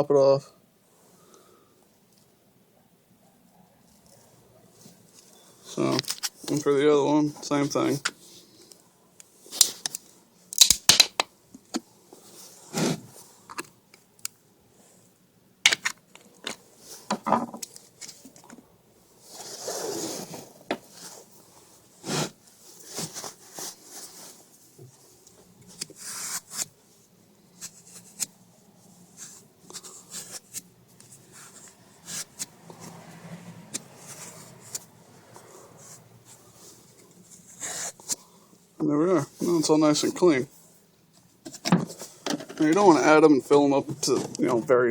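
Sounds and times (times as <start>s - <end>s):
rag rubbing dirt: 12.6s - 13.2s, 22.0s - 22.4s.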